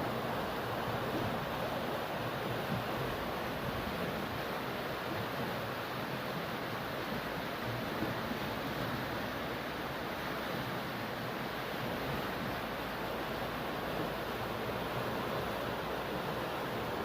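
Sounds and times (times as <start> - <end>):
water rushing: 0.0 - 17.0.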